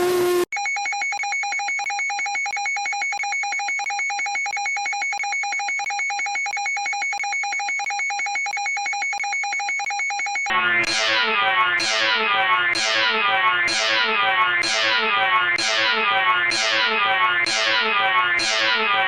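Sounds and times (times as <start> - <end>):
electronic alarm tone pulsing: 10.0 - 19.0.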